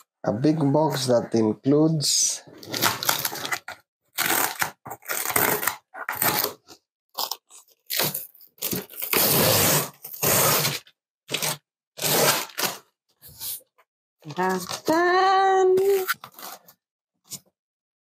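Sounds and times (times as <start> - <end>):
cardboard box being torn open: 7.2 - 12.8.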